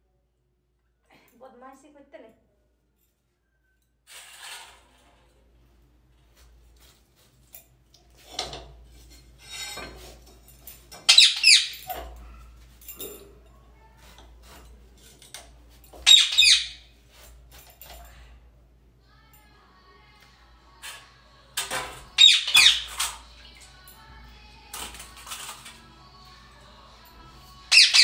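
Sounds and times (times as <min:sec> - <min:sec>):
parakeet squawking: 0:11.1 - 0:11.8, 0:16.0 - 0:16.8, 0:22.2 - 0:22.9, 0:27.7 - 0:28.0.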